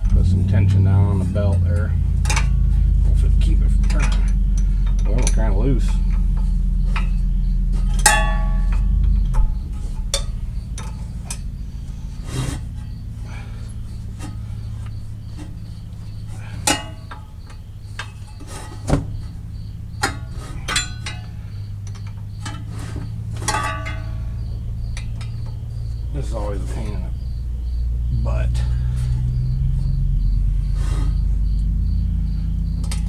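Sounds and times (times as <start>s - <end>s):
steady low hum: 0.0s - 33.0s
ringing metal clinks: 1.4s - 11.6s, 15.6s - 18.4s, 19.1s - 27.2s
hand tools clicking on metal: 16.3s - 18.9s, 20.0s - 27.0s, 32.8s - 33.0s.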